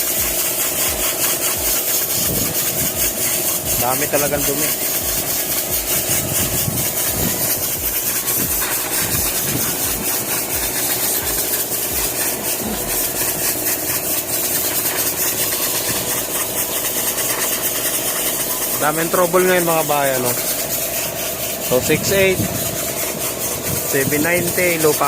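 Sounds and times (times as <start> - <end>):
engine idling: 0.0 - 25.0.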